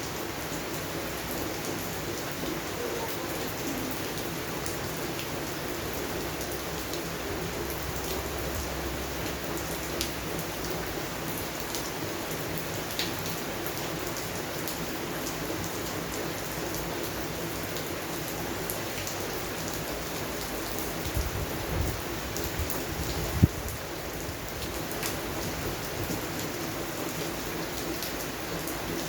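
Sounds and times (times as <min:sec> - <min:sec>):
rain falling on plants: 0:00.0 - 0:29.0.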